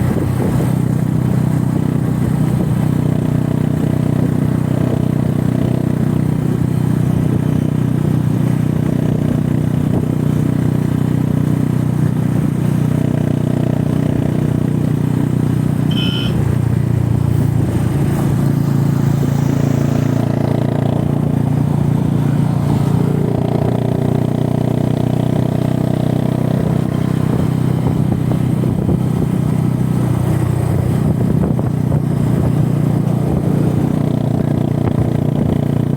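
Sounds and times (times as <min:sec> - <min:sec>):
motorcycle engine running: 0:00.0 - 0:35.9
brief high chirp: 0:15.9 - 0:16.4.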